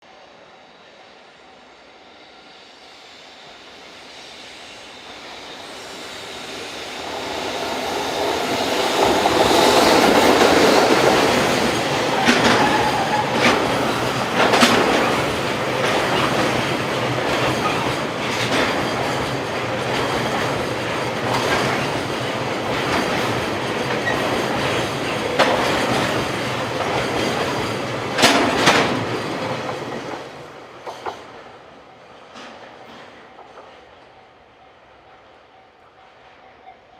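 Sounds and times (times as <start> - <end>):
freight train rumbling past: 0.0 - 36.9
wheels clicking over rail joints: 9.0 - 31.4.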